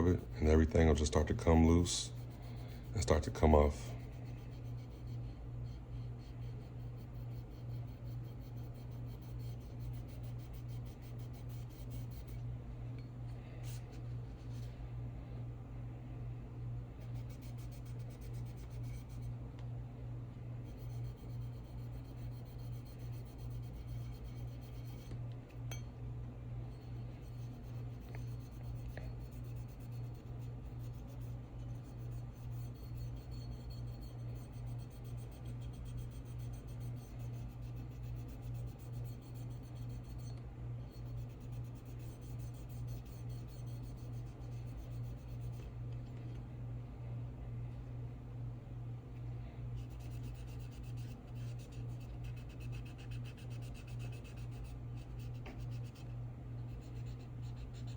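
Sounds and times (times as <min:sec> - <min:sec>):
steady low hum: 0:00.0 - 0:57.9.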